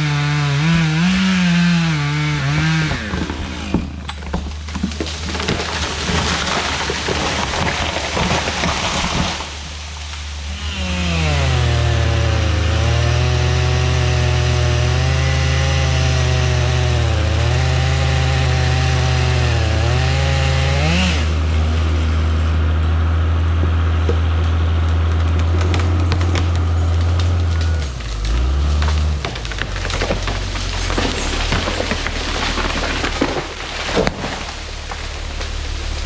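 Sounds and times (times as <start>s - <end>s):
chainsaw cutting wood: 0.0s - 36.0s
wood cracking and snapping: 0.3s - 10.4s, 23.4s - 36.0s
low engine hum: 20.6s - 36.0s.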